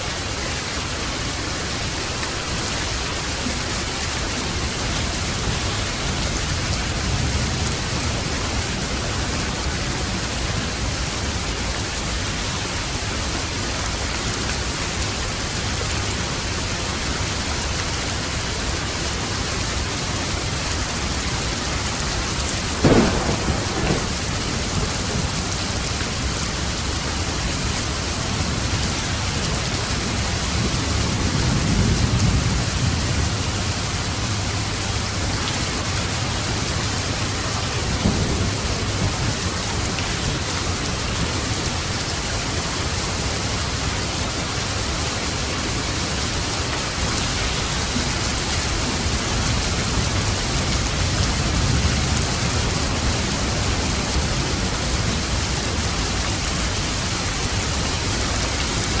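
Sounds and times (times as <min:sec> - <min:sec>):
steady rain falling: 0:00.0 - 0:59.0
thunder rumbling: 0:20.5 - 0:41.9.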